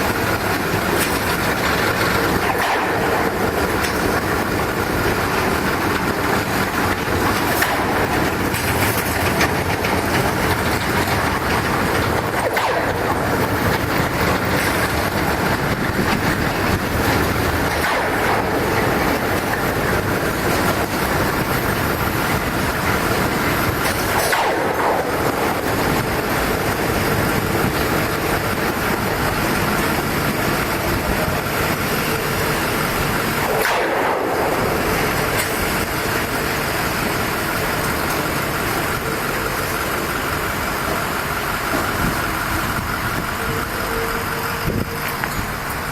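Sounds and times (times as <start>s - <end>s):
rail cars and machinery: 0.0s - 45.9s.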